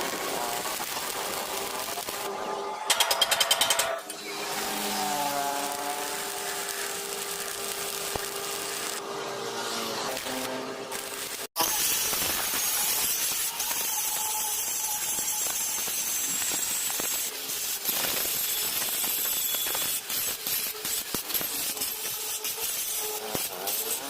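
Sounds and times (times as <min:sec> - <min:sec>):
sharp clicks and crackles: 0:00.0 - 0:09.0, 0:10.1 - 0:24.0
gas cutting torch hissing: 0:04.2 - 0:09.0, 0:10.1 - 0:24.0.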